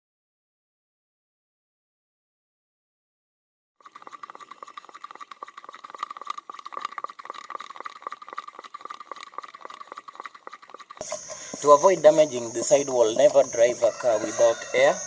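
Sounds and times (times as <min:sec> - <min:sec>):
hand air pump clicking: 0:03.8 - 0:11.4.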